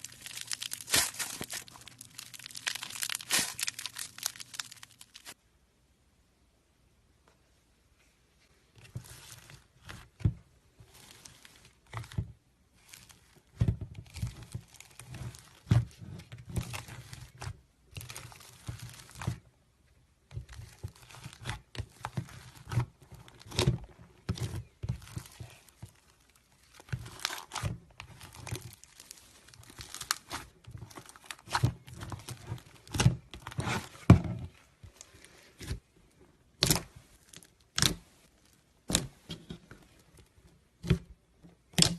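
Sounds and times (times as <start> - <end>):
slime crackling and popping: 0.0 - 5.4, 24.3 - 33.9.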